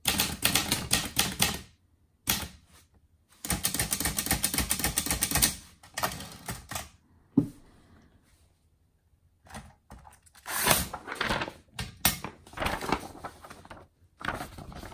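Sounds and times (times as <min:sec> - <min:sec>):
manual typewriter typing: 0:00.0 - 0:01.7, 0:03.4 - 0:06.9.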